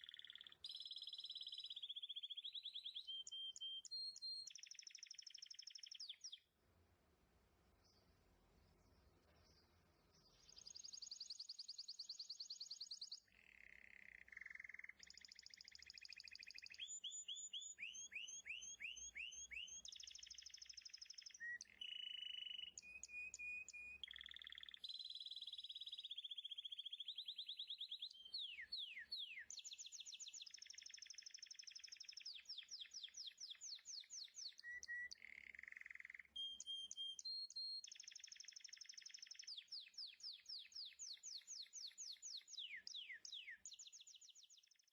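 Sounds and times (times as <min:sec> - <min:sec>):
high bird-like chirps and trills: 0:10.2 - 0:44.5.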